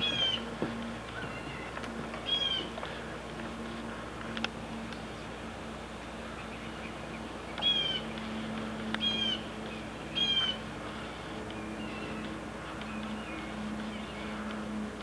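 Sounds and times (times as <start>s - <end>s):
steady low hum: 0.0s - 15.0s
high-pitched animal calls: 1.2s - 2.7s, 7.6s - 8.0s, 9.0s - 9.5s, 10.1s - 10.6s.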